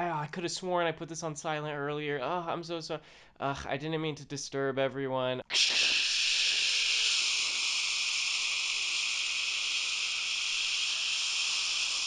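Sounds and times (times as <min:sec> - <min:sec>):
high-pitched hiss: 0:05.5 - 0:12.0.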